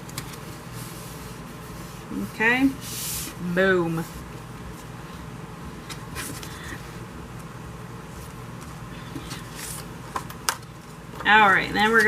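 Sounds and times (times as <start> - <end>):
steady low hum: 0.0 - 12.0
paper rustling: 8.2 - 11.0.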